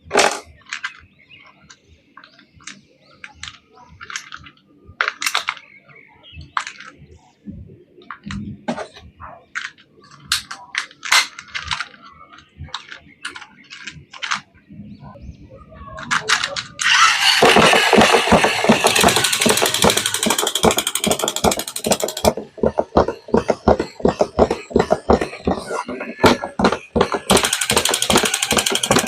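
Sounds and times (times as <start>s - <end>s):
mechanical ratcheting rattle: 16.8s - 22.4s, 27.3s - 29.0s
plastic clicking and tapping: 17.4s - 29.0s.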